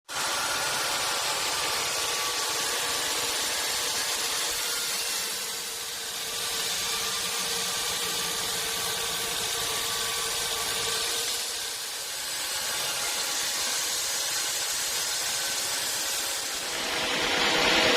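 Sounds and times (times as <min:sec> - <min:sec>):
sawmill machinery hissing and humming: 0:00.1 - 0:17.9.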